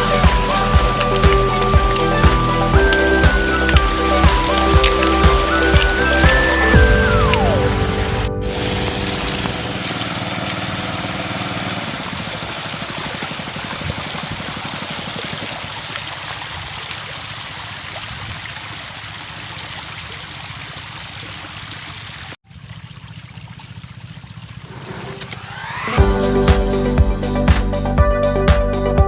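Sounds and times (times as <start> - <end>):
low motor hum: 0.0 - 14.9
water rushing and splashing: 0.0 - 26.3.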